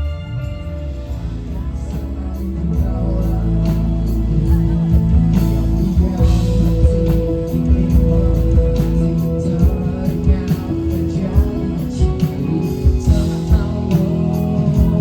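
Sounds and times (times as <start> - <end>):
bass guitar: 0.0 - 15.0
electric guitar: 0.0 - 15.0
person singing: 0.0 - 15.0
drum beat: 4.5 - 15.0.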